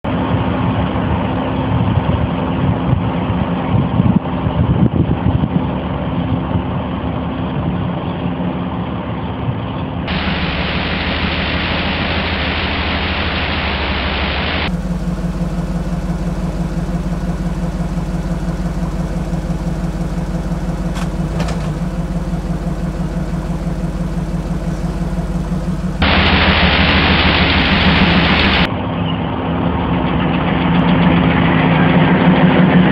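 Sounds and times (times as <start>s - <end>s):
engine idling: 10.1s - 28.7s.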